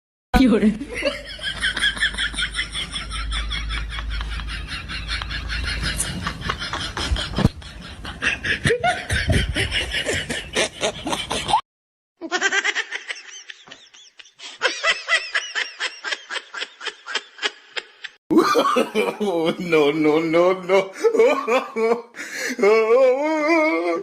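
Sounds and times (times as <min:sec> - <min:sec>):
rapid laughing: 0:01.0 - 0:11.6
rhythmic snickering laugh: 0:01.0 - 0:11.6, 0:12.3 - 0:19.2.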